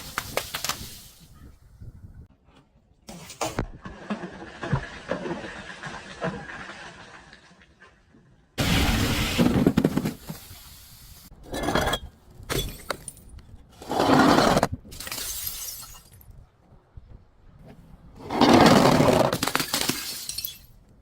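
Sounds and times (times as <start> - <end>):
glass crunching: 14.9 - 16.3, 19.3 - 20.8
glass shattering: 14.9 - 16.3, 19.4 - 20.8.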